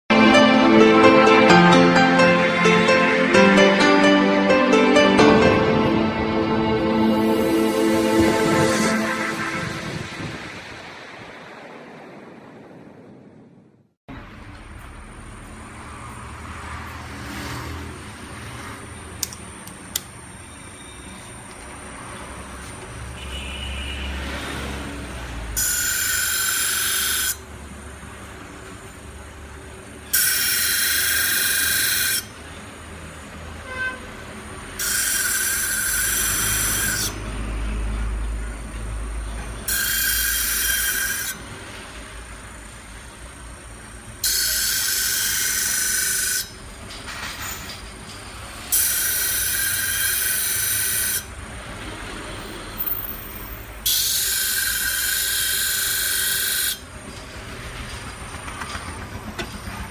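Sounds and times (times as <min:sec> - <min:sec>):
background music: 0:00.1 - 0:10.9
blade-sharpening machine whining: 0:25.6 - 0:27.4, 0:30.1 - 0:32.4, 0:34.8 - 0:37.2, 0:39.6 - 0:41.4, 0:44.2 - 0:46.6, 0:48.7 - 0:51.3, 0:53.9 - 0:56.8.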